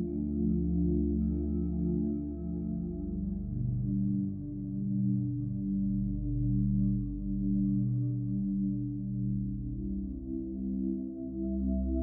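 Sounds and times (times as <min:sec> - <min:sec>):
ambient meditation drone music: 0:00.0 - 0:12.0.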